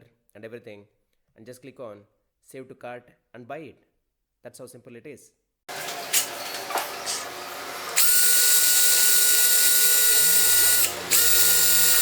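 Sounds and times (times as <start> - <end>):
power tool high whine: 5.7 - 12.0.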